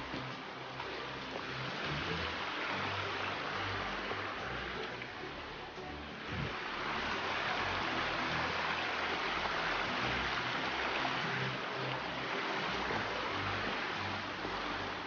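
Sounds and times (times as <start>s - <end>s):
rushing flowing water: 0.0s - 15.0s.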